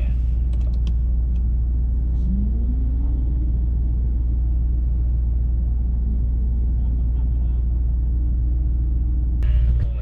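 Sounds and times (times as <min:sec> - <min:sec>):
car engine low rumble: 0:00.0 - 0:10.0.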